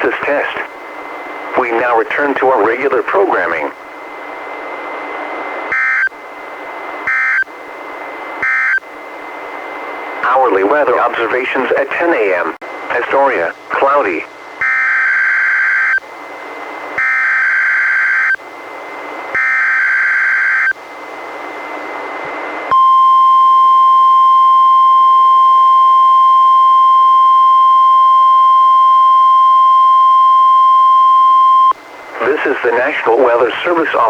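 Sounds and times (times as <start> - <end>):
receiver hiss: 0.0 - 34.0
steady warning alarm tone: 5.7 - 9.0, 14.6 - 20.8, 22.7 - 31.8.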